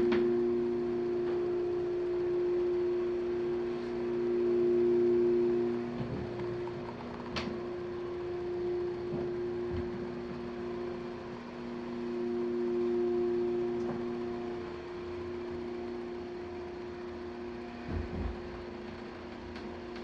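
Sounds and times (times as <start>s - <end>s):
elevator motor humming: 0.0s - 20.0s.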